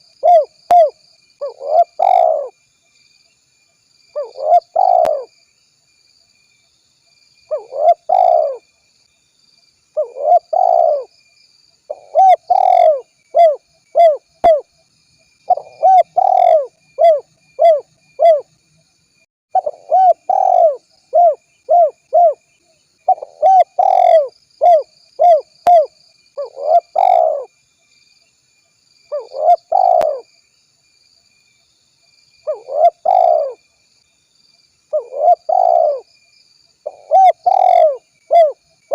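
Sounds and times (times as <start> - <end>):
dove cooing: 0.0 - 2.6, 4.2 - 5.3, 7.5 - 8.6, 10.0 - 11.1, 11.9 - 14.7, 15.5 - 18.5, 19.6 - 22.4, 23.1 - 27.5, 29.1 - 30.3, 32.4 - 33.6, 34.9 - 36.1, 36.8 - 38.6.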